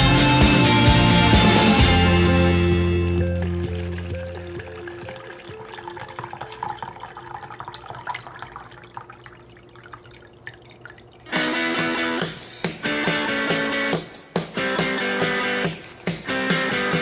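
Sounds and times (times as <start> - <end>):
music: 0.0 - 5.7, 11.3 - 17.0
liquid dripping and trickling: 2.5 - 12.5.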